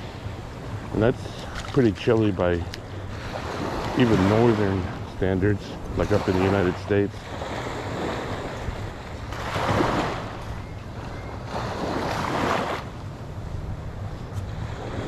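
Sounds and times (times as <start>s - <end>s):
small waves breaking on sand: 0.0s - 13.2s, 13.8s - 15.0s
wind buffeting microphone: 0.0s - 15.0s.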